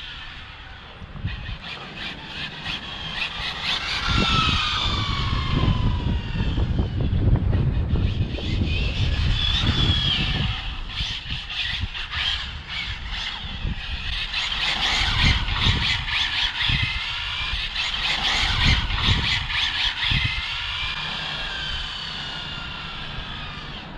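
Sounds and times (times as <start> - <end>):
electric motor whining: 0.0 - 23.9.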